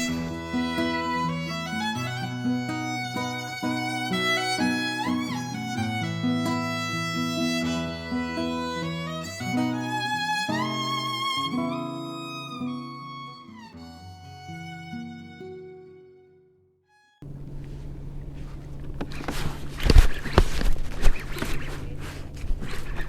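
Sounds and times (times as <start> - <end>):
violin and plucked strings music: 0.0 - 17.2.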